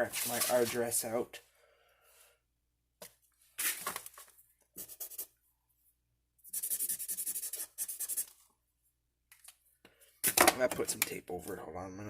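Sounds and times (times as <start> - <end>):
pen scribbling on paper: 4.8 - 5.3, 6.5 - 8.3.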